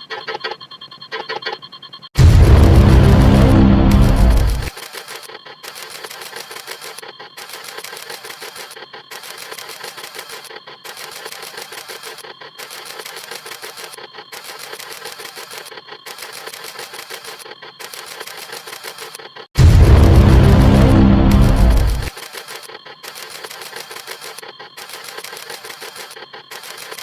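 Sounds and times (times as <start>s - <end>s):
camera shutter clicks: 4.0s - 19.2s, 22.0s - 27.0s.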